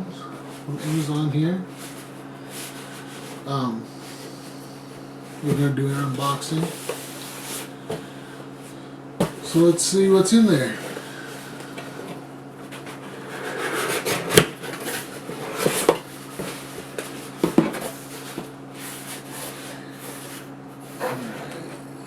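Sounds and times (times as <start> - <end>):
packaging rubbing and scraping: 12.7 - 21.6.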